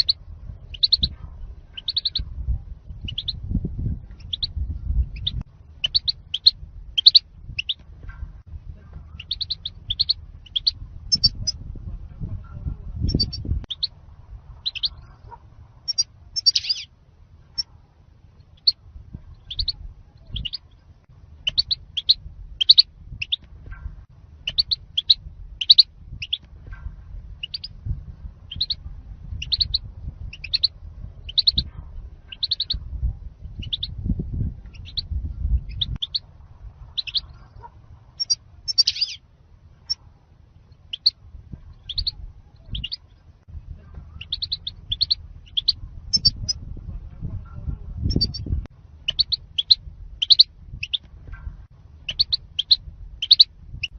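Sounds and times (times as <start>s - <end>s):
goldfinch twittering: 0.0s - 1.1s, 1.8s - 2.2s, 5.1s - 7.8s, 9.2s - 11.6s, 14.6s - 15.0s, 15.9s - 16.9s, 21.4s - 23.4s, 24.4s - 26.4s, 27.4s - 27.7s, 28.5s - 28.8s, 29.4s - 30.7s, 37.0s - 37.4s, 38.2s - 39.2s, 41.8s - 43.0s, 44.2s - 46.6s, 49.1s - 51.0s, 52.0s - 53.9s
faint low rumble: 0.0s - 53.9s.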